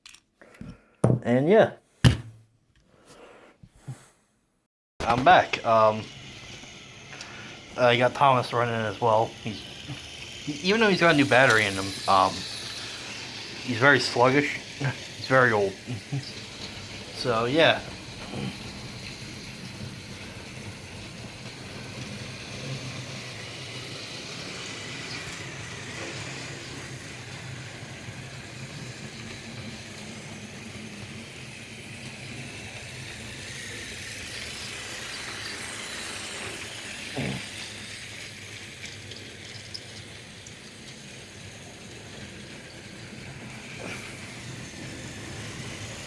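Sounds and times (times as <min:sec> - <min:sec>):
knock: 0:01.0 - 0:01.2, 0:02.0 - 0:02.4
toy train motors whirring: 0:05.0 - 0:46.0
wheels rattling over track joints: 0:07.8 - 0:46.0.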